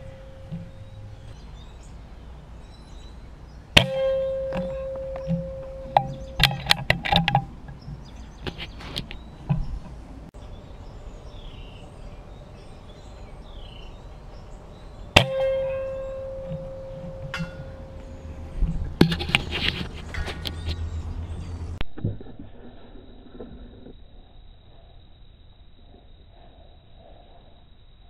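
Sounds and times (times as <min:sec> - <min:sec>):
clicks and knocks: 0:03.8 - 0:10.0, 0:15.2 - 0:20.8.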